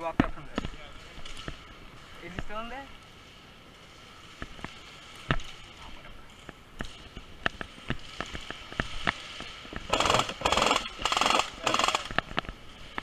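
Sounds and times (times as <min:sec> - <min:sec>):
airsoft gun shots: 0:09.9 - 0:12.1.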